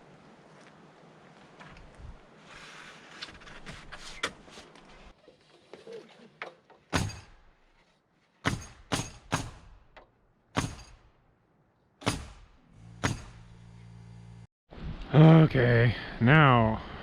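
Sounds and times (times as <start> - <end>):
hammer driving nails into wood: 6.9 - 7.4, 8.4 - 11.1, 12.0 - 13.7
low steady hum: 12.7 - 14.5.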